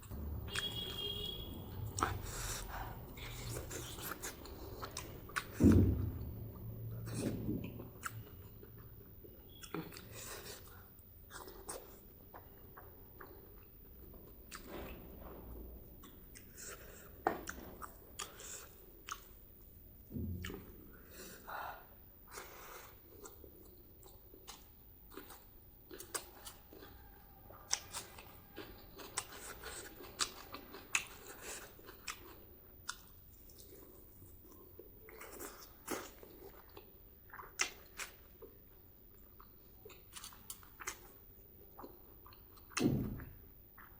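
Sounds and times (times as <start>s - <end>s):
close chewing: 1.9s - 5.7s, 6.6s - 15.0s, 16.0s - 19.4s, 22.3s - 42.8s.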